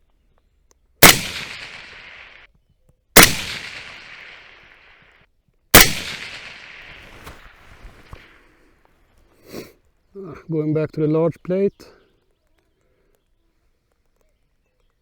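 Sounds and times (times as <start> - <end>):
suppressed rifle shots echoing: 1.0 - 2.5, 3.2 - 5.0, 5.7 - 8.6.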